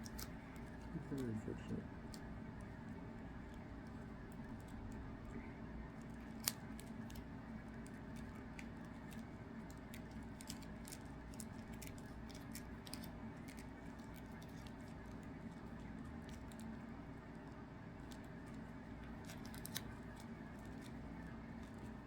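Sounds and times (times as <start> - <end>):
low room hum: 0.0 - 22.0
plastic card sleeves clicking: 6.0 - 15.0, 19.0 - 21.0.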